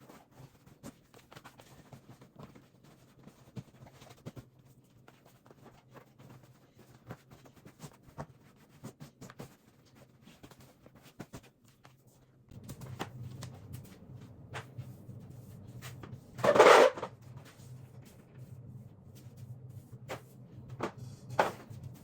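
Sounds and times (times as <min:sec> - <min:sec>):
low hum: 0:12.5 - 0:22.0.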